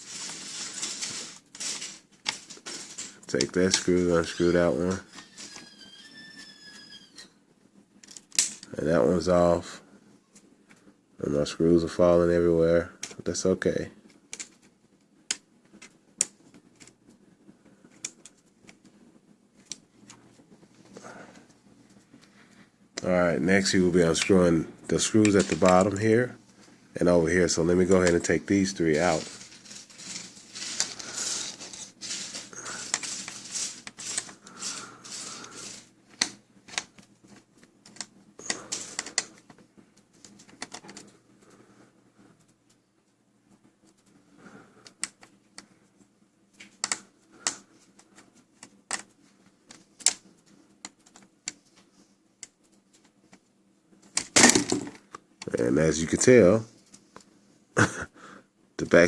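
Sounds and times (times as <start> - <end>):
screwdriver scraping screws: 28.9 - 35.9
small parts clicking: 28.9 - 39.5, 46.6 - 49.1.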